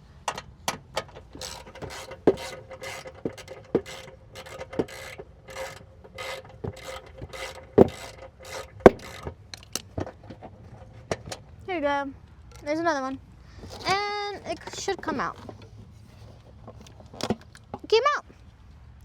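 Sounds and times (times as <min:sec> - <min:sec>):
ratchet wrench rasping: 0:00.3 - 0:11.4
sharp knocks: 0:01.4 - 0:10.4.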